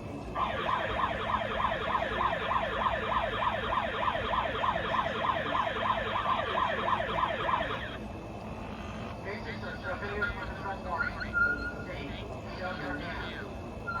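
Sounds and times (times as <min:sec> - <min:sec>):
megaphone siren yelping: 0:00.4 - 0:08.0.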